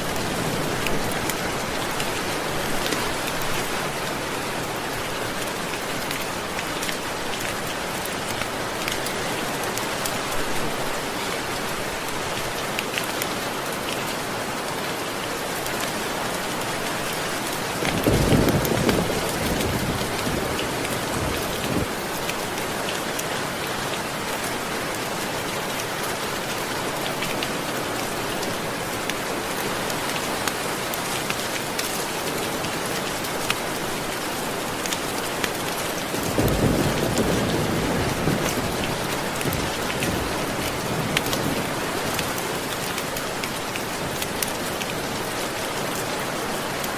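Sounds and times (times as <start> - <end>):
steady rain falling: 0.0 - 46.9
low rumble of thunder: 17.8 - 22.0, 36.2 - 41.8.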